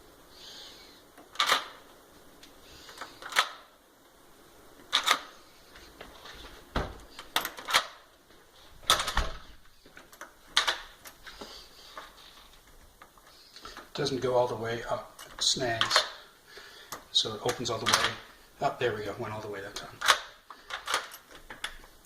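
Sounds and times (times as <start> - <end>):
dead-bolt lock clicking and clunking: 1.3 - 1.8, 3.0 - 3.6, 4.9 - 5.4, 6.8 - 8.0, 8.8 - 11.2, 16.9 - 18.2, 20.0 - 22.0.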